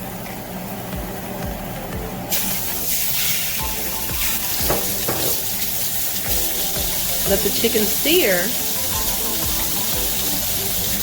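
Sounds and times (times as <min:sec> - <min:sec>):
background music with beat: 0:00.9 - 0:02.8, 0:03.6 - 0:11.0
chicken sizzling in skillet: 0:02.3 - 0:11.0.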